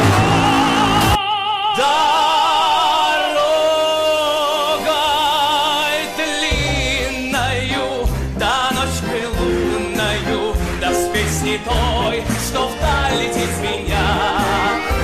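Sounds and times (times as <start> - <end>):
singer with operatic vibrato: 0.0 - 15.0
bass beat: 6.6 - 15.0.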